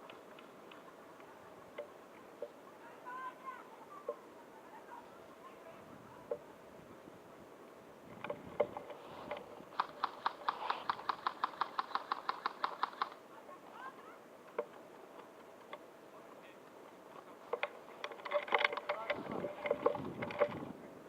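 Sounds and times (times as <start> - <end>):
airsoft gun clicks: 8.2 - 13.2
airsoft gun firing bursts: 9.7 - 13.2.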